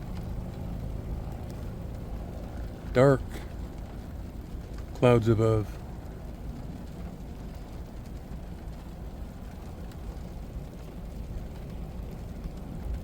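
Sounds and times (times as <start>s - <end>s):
vehicle rumbling: 0.0s - 13.0s.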